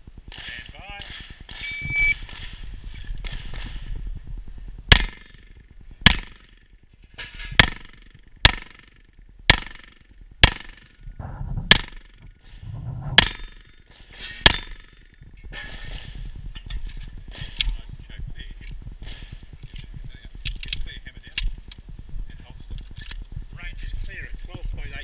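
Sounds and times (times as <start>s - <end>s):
pistol shots with echo: 4.9s - 5.4s, 9.5s - 11.0s.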